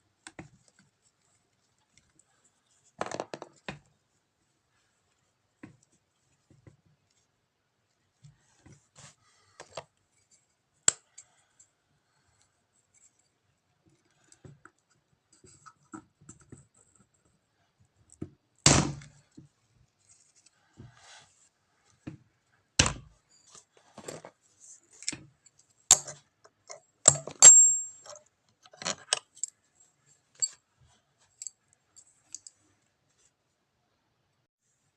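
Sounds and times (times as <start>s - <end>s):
tools clicking and scraping: 24.9s - 29.6s, 30.3s - 30.6s.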